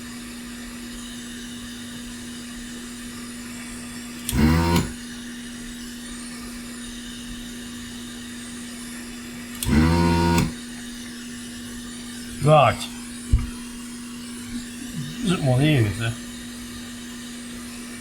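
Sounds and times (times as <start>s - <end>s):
small blower fan humming and hissing: 0.0s - 18.0s
short wordless voice sounds: 12.4s - 13.0s, 14.8s - 16.2s.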